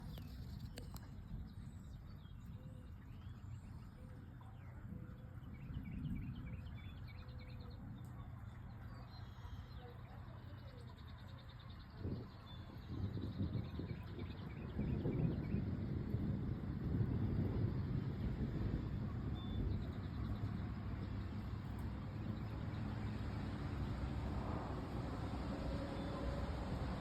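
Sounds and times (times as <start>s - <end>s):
small birds chirping: 0.0s - 15.8s, 17.7s - 27.0s
steady low rumble: 0.0s - 27.0s.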